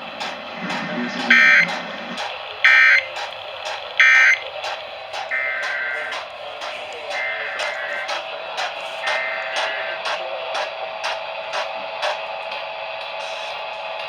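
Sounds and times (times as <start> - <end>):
buzzy data bursts: 1.2 - 1.8.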